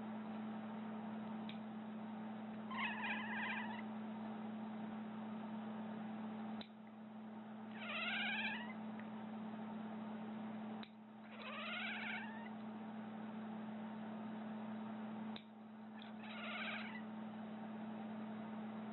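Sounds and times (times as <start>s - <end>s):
cat warbling cries: 2.7s - 3.8s, 7.8s - 8.8s, 11.3s - 12.5s, 16.0s - 17.0s.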